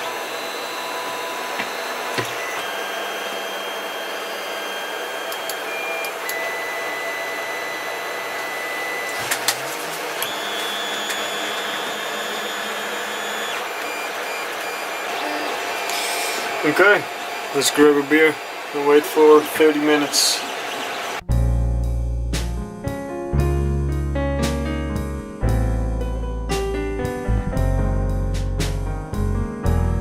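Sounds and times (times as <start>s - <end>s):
printer fans running: 0.0s - 21.2s
stepper motors whining: 0.0s - 21.2s.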